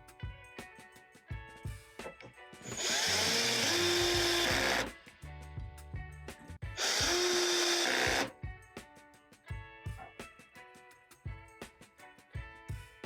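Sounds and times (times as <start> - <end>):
background music: 0.0 - 13.0
power tool whining and grinding: 2.7 - 5.0, 6.8 - 8.3.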